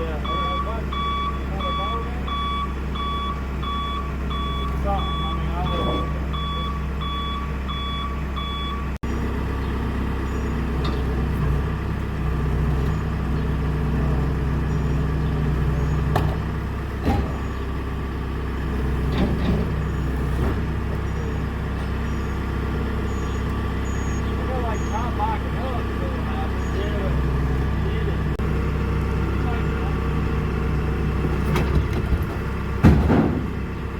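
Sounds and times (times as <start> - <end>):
reversing alarm beeping: 0.0 - 11.0, 14.6 - 16.3, 17.2 - 17.9, 19.7 - 28.4
forklift engine running: 0.0 - 33.9.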